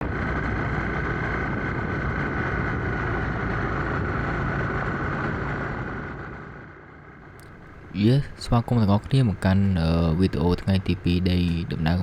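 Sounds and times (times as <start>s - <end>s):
engine running steadily: 0.0s - 12.0s
steady high tone: 7.4s - 12.0s.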